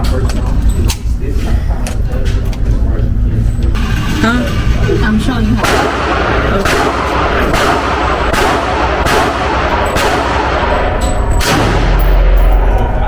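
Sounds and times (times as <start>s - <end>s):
loud background din: 0.0s - 13.0s
gunshots: 5.6s - 13.0s.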